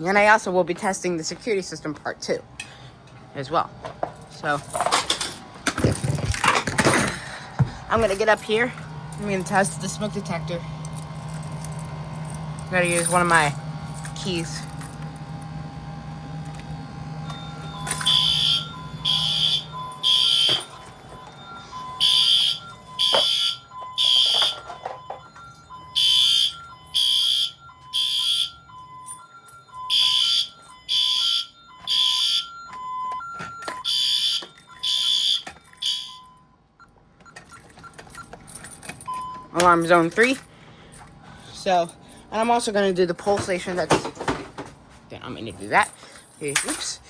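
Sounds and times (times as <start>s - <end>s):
fire alarm high beeps: 7.9s - 14.8s, 17.2s - 40.5s.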